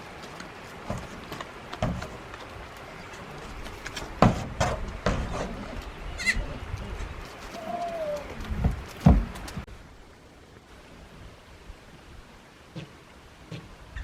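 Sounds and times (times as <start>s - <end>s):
goat hooves knocking: 0.1s - 5.9s, 6.7s - 9.7s.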